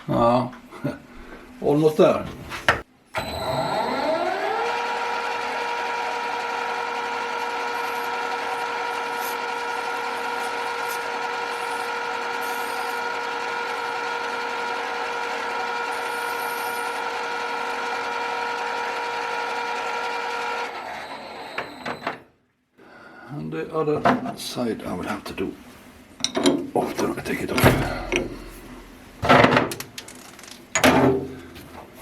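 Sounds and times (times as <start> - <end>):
spindle motor whine: 3.1 - 22.2, 27.3 - 29.2.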